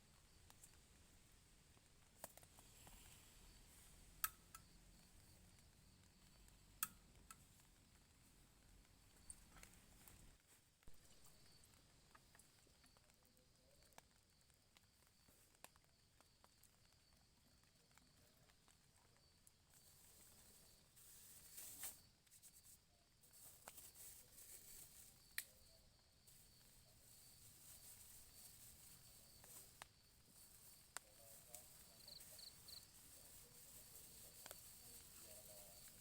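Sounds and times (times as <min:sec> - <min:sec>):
rustling: 0:19.7 - 0:36.0.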